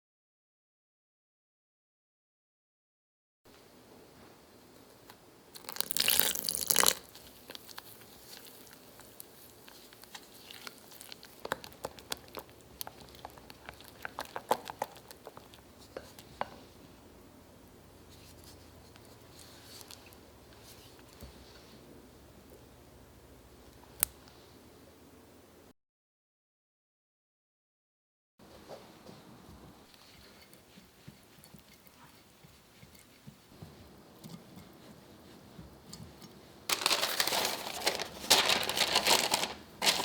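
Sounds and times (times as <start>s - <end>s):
plastic packet ripping open: 5.6s - 8.7s, 36.7s - 40.0s
wrapper crinkling: 5.6s - 15.6s, 36.7s - 40.0s.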